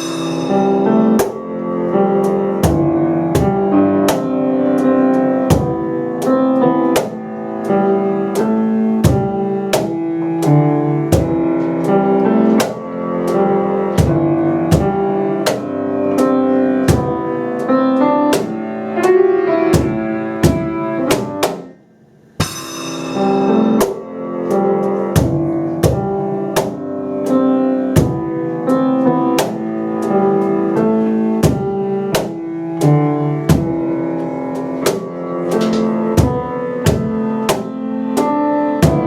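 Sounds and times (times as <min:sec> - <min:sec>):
sharp percussion strikes: 0:00.0 - 0:01.6, 0:22.4 - 0:27.4
piano playing: 0:00.0 - 0:39.0.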